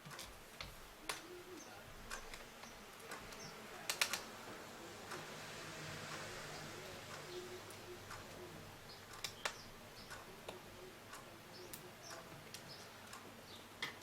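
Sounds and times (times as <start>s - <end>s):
sharp clicks: 0.0s - 4.4s, 7.1s - 14.0s.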